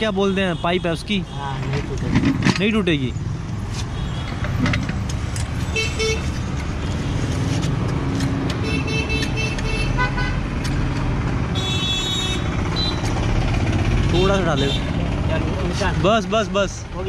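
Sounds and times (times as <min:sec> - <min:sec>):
street traffic: 0:00.0 - 0:17.0
vehicle horns honking: 0:00.2 - 0:02.0, 0:03.9 - 0:04.7, 0:05.6 - 0:07.2, 0:08.6 - 0:10.5, 0:11.5 - 0:13.2, 0:14.2 - 0:15.0.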